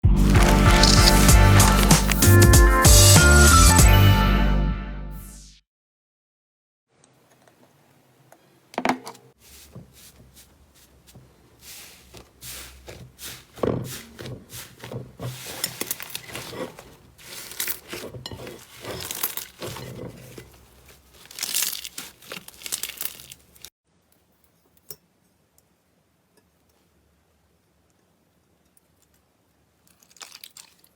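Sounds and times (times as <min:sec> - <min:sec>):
slime crackling and popping: 0:00.2 - 0:02.4, 0:21.1 - 0:23.7, 0:30.0 - 0:30.9.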